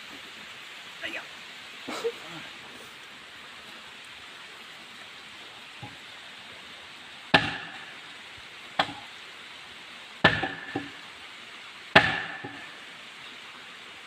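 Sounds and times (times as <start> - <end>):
steady hiss: 0.0 - 14.0
heavy tool striking wood: 7.3 - 7.9, 8.8 - 9.0, 10.2 - 11.0, 11.9 - 12.6.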